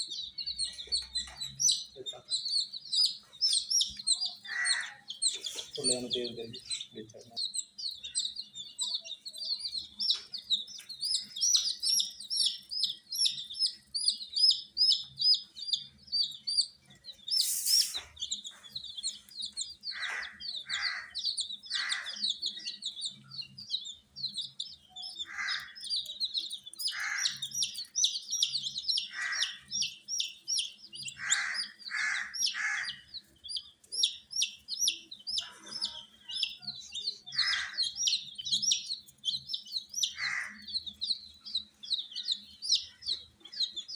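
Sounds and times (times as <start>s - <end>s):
baby chicks peeping: 0.0s - 43.9s
lower short bird calls: 17.3s - 18.4s.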